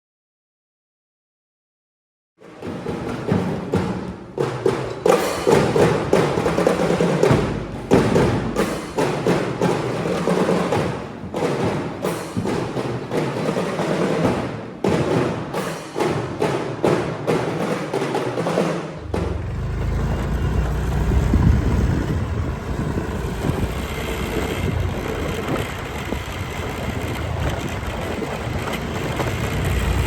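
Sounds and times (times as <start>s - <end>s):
music with percussive beat: 2.4s - 19.6s.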